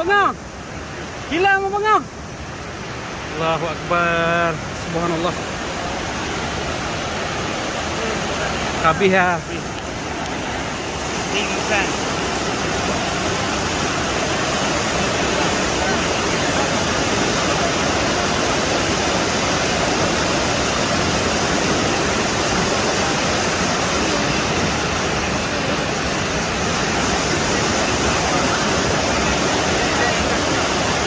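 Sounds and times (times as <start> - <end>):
rushing floodwater: 0.0 - 31.0.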